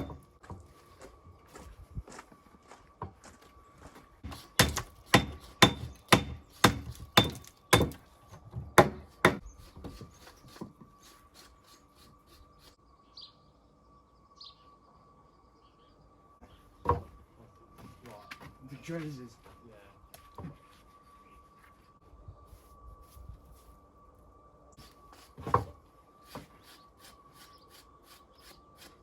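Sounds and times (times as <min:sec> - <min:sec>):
hammer striking stone: 0:04.6 - 0:08.0
bird chirping: 0:08.6 - 0:17.5, 0:26.2 - 0:29.0.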